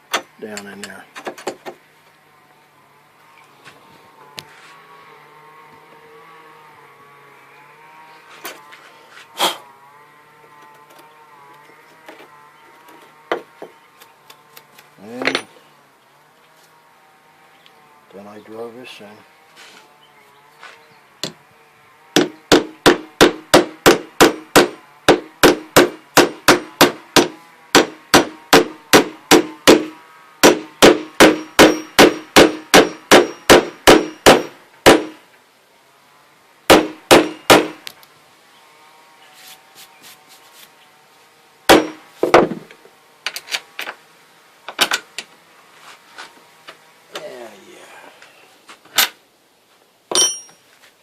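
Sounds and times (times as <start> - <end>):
hammer striking metal insert: 50.1 - 50.6.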